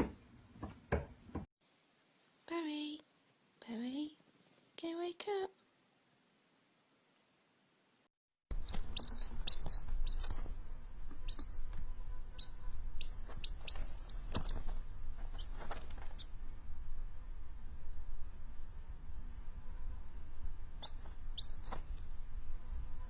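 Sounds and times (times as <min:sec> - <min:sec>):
bird chirping: 0:08.5 - 0:16.4, 0:20.7 - 0:22.1.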